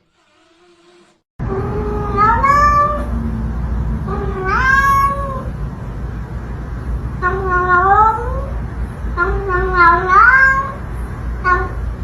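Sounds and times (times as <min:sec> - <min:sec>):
cat meowing: 0:00.3 - 0:03.1, 0:04.1 - 0:05.5, 0:09.2 - 0:10.8
steady low rumble: 0:01.4 - 0:12.0.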